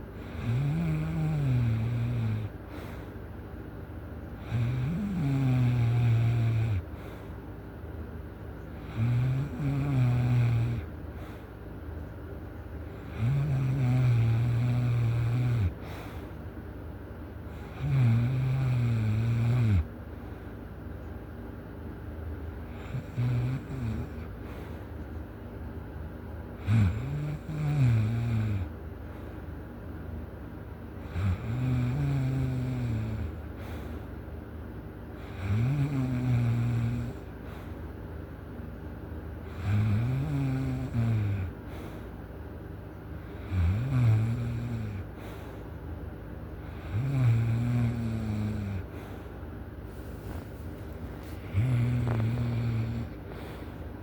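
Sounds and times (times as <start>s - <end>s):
loud snoring: 0.2s - 2.6s, 4.4s - 6.8s, 8.8s - 10.9s, 12.9s - 16.0s, 17.5s - 19.9s, 22.7s - 24.3s, 26.6s - 28.7s, 31.0s - 33.8s, 35.2s - 37.3s, 39.5s - 41.9s, 43.3s - 45.1s, 46.6s - 49.1s, 51.0s - 53.7s.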